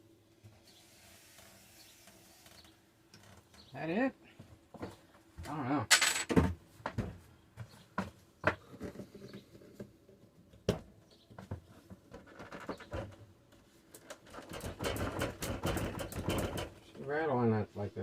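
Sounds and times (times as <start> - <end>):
refrigerator rattling in cabinet: 14.3 - 16.8.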